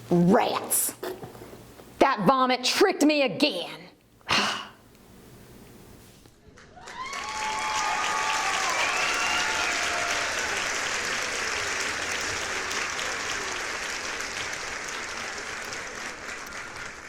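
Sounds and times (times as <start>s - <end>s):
audience applauding: 6.4s - 17.0s.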